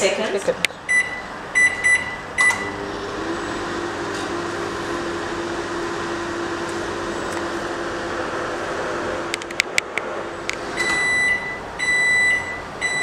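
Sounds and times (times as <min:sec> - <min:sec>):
microwave oven humming: 0:00.8 - 0:13.0
microwave keypad beep: 0:00.9 - 0:02.8, 0:10.8 - 0:13.0.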